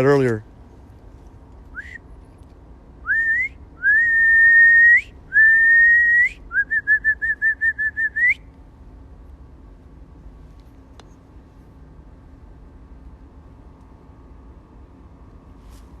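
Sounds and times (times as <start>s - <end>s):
person whistling calls: 1.7s - 2.0s, 3.0s - 8.4s.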